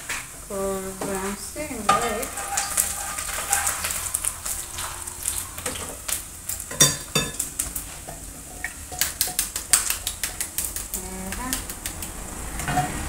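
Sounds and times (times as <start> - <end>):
onions sizzling in a pan: 0.0 - 13.0
eggshells cracking and tapping: 1.9 - 8.0, 8.7 - 12.2.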